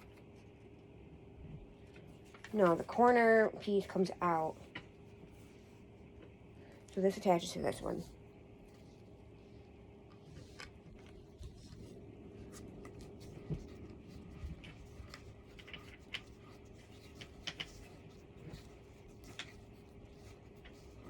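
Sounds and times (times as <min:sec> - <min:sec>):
faint steady hum: 0:00.0 - 0:21.0
small clicks and light knocks: 0:14.4 - 0:19.6.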